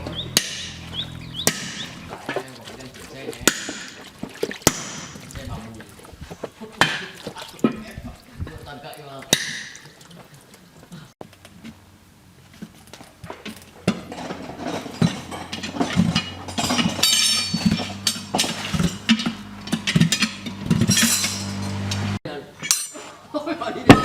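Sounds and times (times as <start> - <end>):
engine humming: 0.0 - 7.6, 10.2 - 22.2
knocks and clatter: 12.5 - 22.1.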